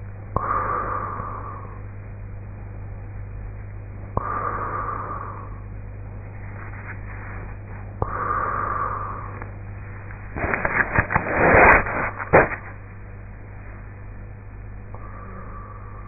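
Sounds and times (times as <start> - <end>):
steady low hum: 0.0 - 16.0
woman breathing softly: 0.4 - 1.8, 4.2 - 5.7, 8.0 - 9.5, 14.9 - 16.0
crackling and clicking: 10.1 - 12.8.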